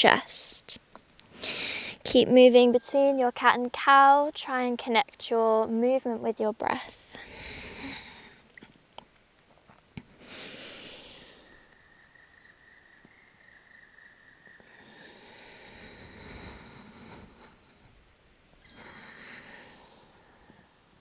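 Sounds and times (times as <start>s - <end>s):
person breathing deeply: 7.2s - 8.4s, 10.2s - 11.7s, 14.6s - 17.9s, 18.6s - 20.8s.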